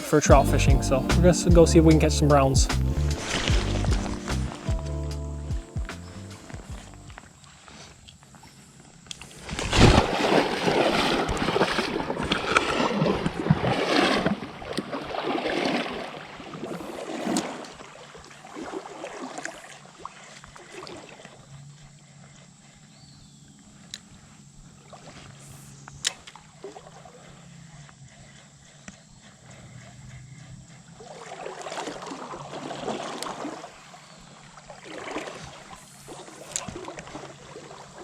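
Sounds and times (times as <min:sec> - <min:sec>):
water trickling: 0:00.0 - 0:08.3
water splashing and sloshing: 0:00.0 - 0:22.9, 0:23.8 - 0:38.0.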